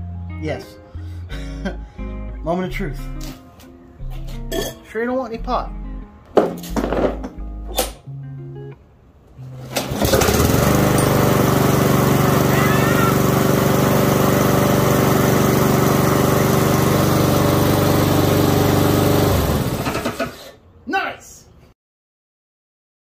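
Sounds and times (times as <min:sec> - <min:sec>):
lawnmower engine running: 0:09.5 - 0:20.5.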